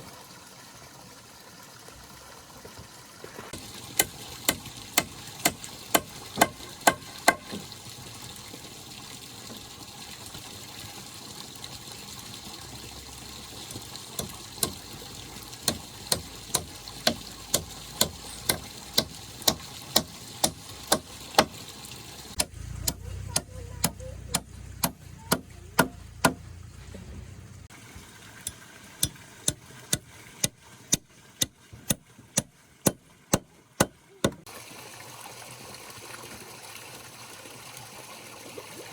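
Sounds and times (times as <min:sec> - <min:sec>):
hiss of water: 0:00.0 - 0:22.4
tool striking in sharp blows: 0:04.0 - 0:07.6, 0:15.6 - 0:21.6, 0:22.4 - 0:26.4.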